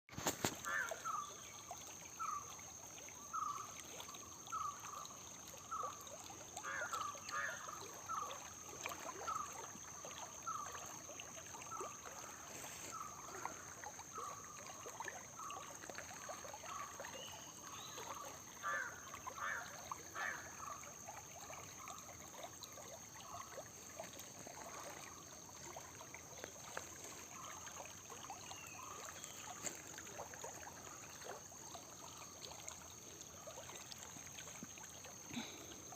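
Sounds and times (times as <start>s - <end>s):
water trickling: 0.1s - 35.9s.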